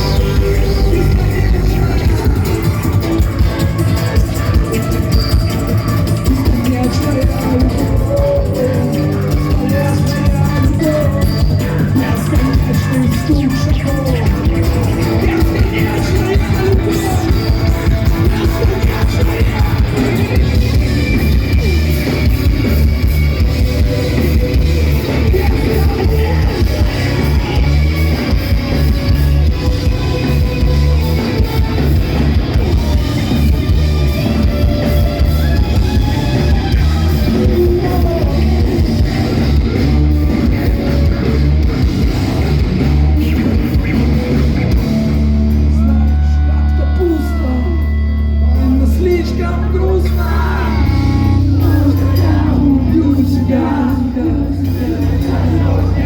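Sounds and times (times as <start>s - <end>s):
drum kit: 0.0s - 47.9s
bass guitar: 0.0s - 56.0s
distorted guitars: 0.0s - 56.0s.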